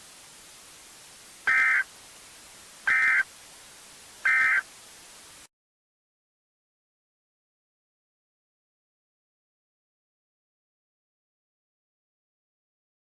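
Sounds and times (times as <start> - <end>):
steady hiss: 0.0 - 5.5
buzzy digital squawks: 1.5 - 1.8, 2.9 - 3.2, 4.3 - 4.6.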